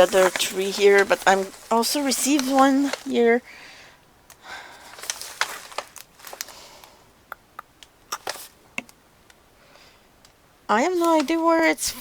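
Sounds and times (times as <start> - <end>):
packaging crinkling and rustling: 0.0 - 3.4, 4.7 - 7.0.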